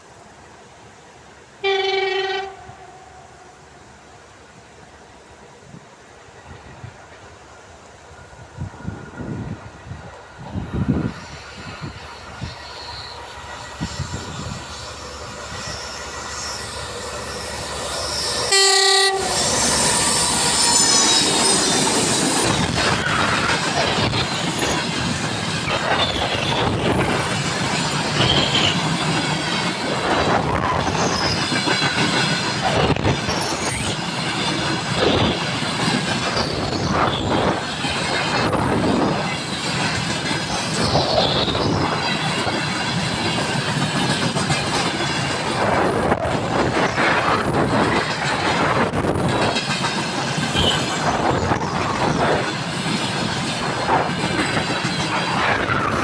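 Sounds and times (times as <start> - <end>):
train passing: 0.0 - 56.0
train horn blast: 1.6 - 3.4, 18.5 - 20.0, 50.5 - 51.0
wheel squeals: 11.9 - 29.8, 30.8 - 37.9, 39.2 - 42.7.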